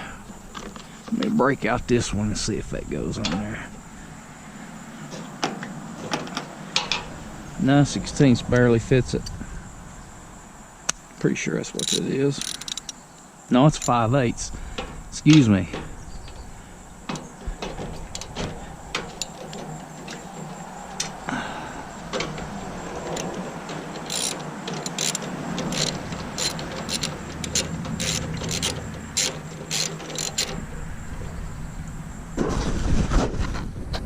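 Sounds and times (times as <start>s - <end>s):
hand ratchet clicking: 11.8s - 13.0s, 22.0s - 30.6s.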